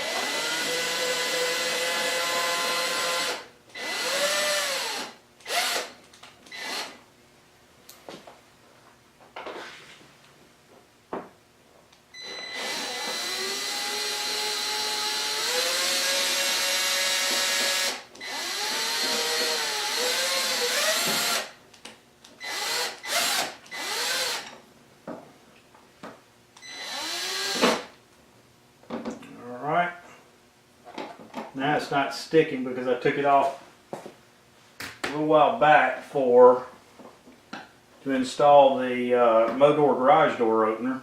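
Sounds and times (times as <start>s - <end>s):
drill motor running: 0.0s - 5.9s, 6.5s - 7.0s, 12.2s - 21.5s, 22.4s - 24.5s, 26.7s - 27.9s.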